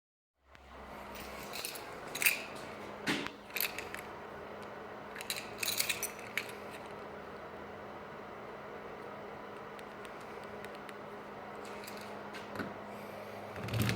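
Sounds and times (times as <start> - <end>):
faint hum: 0.4 - 13.9
small metallic objects clinking: 1.1 - 2.5, 3.5 - 4.1, 5.1 - 6.9.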